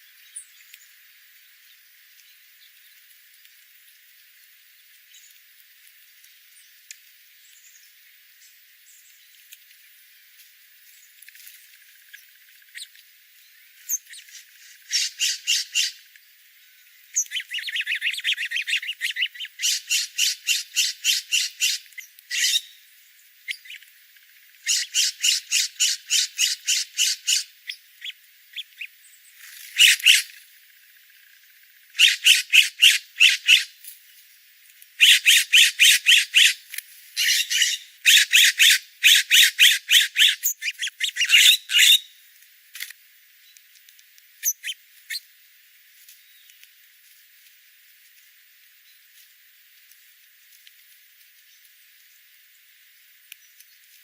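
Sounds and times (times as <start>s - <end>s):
bird harsh chattering calls: 13.9s - 16.0s, 17.2s - 22.8s, 24.6s - 28.9s, 29.5s - 30.3s, 32.0s - 33.7s, 35.0s - 36.6s, 37.2s - 42.1s, 44.4s - 45.2s.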